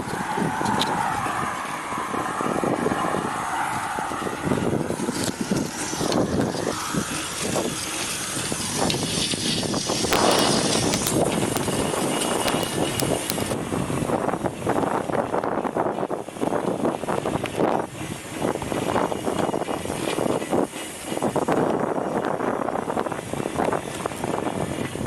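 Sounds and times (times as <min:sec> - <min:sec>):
wind on microphone: 0:00.0 - 0:25.0
scattered clicks: 0:10.1 - 0:11.8, 0:12.5 - 0:13.6.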